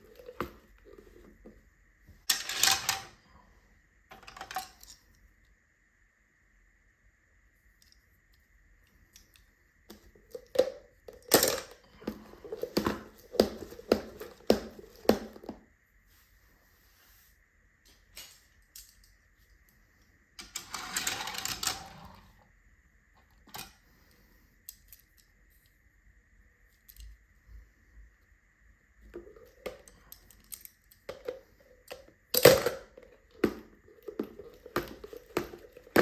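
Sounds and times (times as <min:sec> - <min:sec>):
toy cars clicking and clattering: 0:02.3 - 0:03.1, 0:20.4 - 0:22.0.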